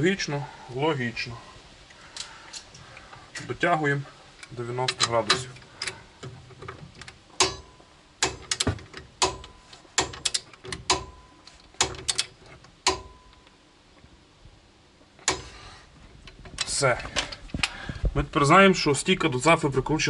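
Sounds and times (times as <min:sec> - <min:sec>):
hand wrench metallic clicks: 0:08.2 - 0:13.5.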